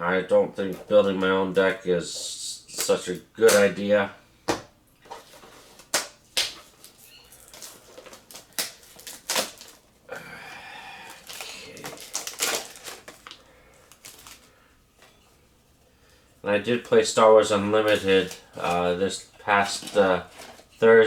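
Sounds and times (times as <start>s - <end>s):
packaging crinkling and rustling: 5.0s - 10.0s, 11.0s - 15.2s, 17.5s - 20.8s.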